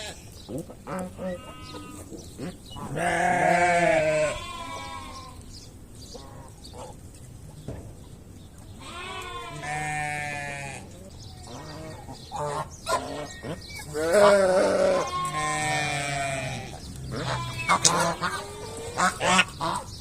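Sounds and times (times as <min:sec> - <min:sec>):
sheep bleating: 0:02.9 - 0:05.4, 0:08.8 - 0:10.8, 0:13.9 - 0:19.2.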